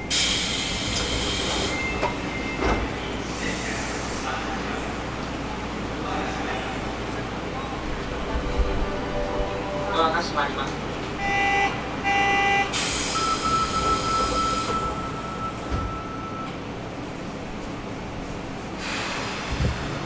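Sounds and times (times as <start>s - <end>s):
pneumatic doors air hiss: 0.0s - 4.3s, 12.7s - 15.8s, 18.8s - 20.0s
subway door buzzer whine: 11.2s - 16.6s.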